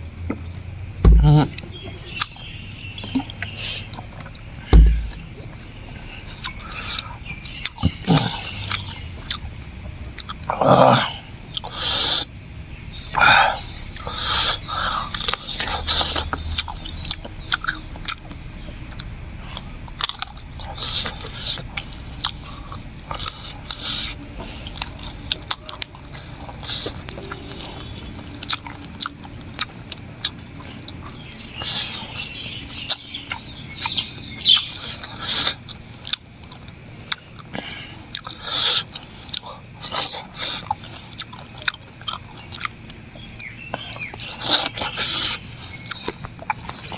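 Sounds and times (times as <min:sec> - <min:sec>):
wet chewing: 0:00.2 - 0:12.2, 0:13.0 - 0:46.9
crunching bites: 0:00.3 - 0:02.4, 0:03.0 - 0:05.7
lip smacks: 0:03.0 - 0:05.7, 0:14.0 - 0:32.1, 0:32.8 - 0:46.9.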